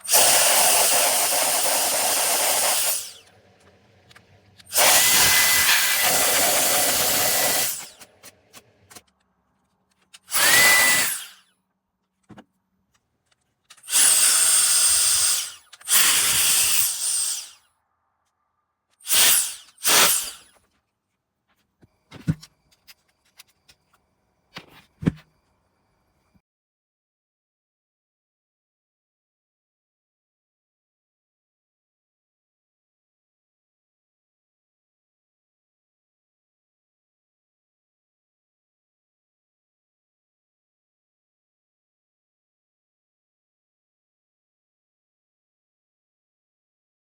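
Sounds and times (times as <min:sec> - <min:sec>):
air duster fan blowing: 0:04.7 - 0:08.1.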